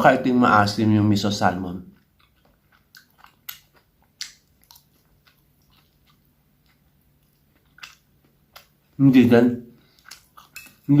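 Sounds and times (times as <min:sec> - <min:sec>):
person chewing food: 0:01.8 - 0:09.0, 0:09.7 - 0:11.0.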